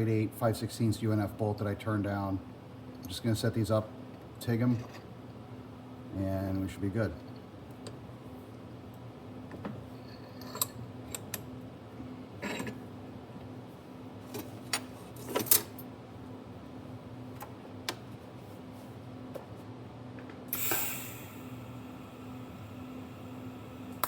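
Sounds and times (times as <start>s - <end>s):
steady low hum: 0.0s - 24.0s
short hiss: 20.5s - 21.9s.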